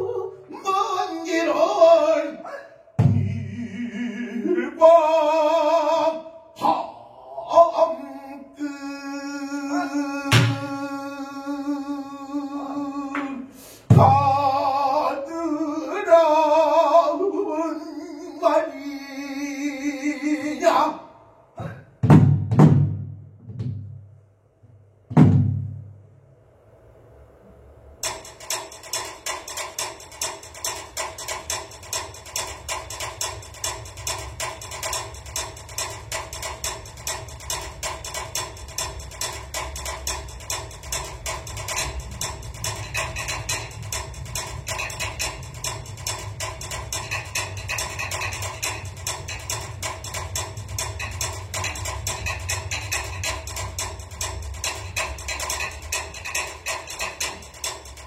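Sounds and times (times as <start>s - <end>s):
heavy drum strokes: 3.0s - 4.1s, 9.4s - 20.8s, 21.6s - 24.2s, 25.1s - 58.0s
instrumental music with drum beat: 13.9s - 14.5s, 22.0s - 24.0s, 28.0s - 58.0s.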